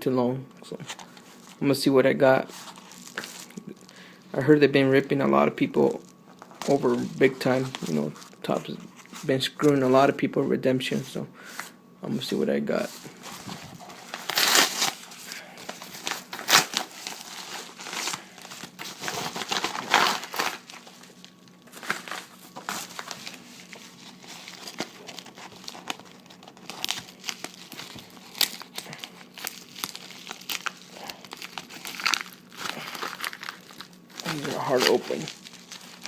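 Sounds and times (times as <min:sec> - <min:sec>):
packaging crinkling: 0:02.5 - 0:04.1, 0:12.8 - 0:36.0
packaging tearing: 0:13.2 - 0:36.0.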